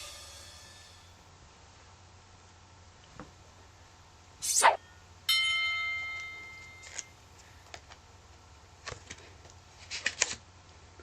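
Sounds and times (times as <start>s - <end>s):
metallic chime ringing: 5.3s - 7.1s.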